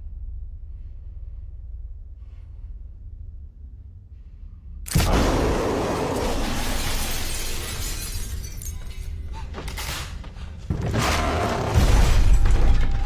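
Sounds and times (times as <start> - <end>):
loud shattering crash: 5.0 - 8.8.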